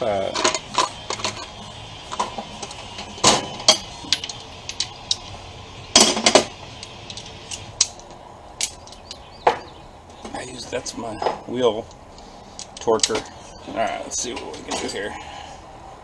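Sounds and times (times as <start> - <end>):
metal hand tools clinking: 0.3 - 5.3.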